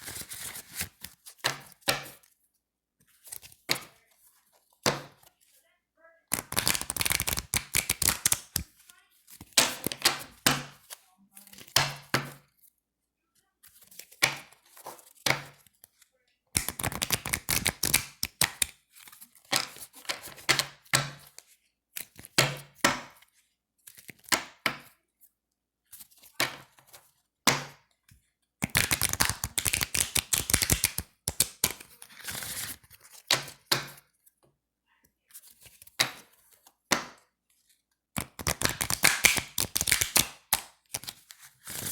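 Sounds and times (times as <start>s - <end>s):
playing cards riffle-shuffled: 0.0s - 1.3s, 6.3s - 10.2s, 16.6s - 19.8s, 28.6s - 33.2s, 38.2s - 41.9s
cards knocking with low thud: 6.3s - 8.7s.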